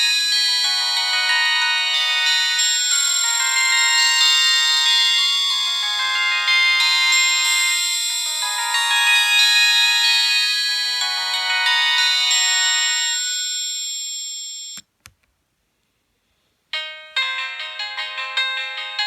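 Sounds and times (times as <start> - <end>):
phone ringtone melody: 0.0 - 14.8, 16.8 - 19.0
click: 14.7 - 15.3.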